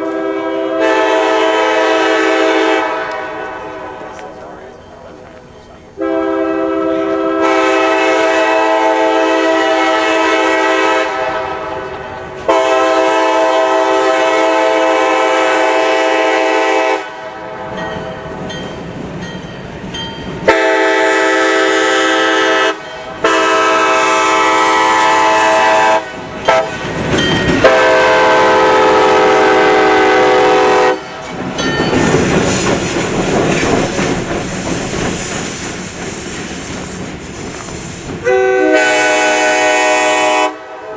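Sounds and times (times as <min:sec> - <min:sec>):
locomotive air horn blasts: 0:00.0 - 0:04.0, 0:06.0 - 0:17.6, 0:20.4 - 0:26.8, 0:27.6 - 0:31.2, 0:38.2 - 0:40.9
rushing noise: 0:31.0 - 0:38.3.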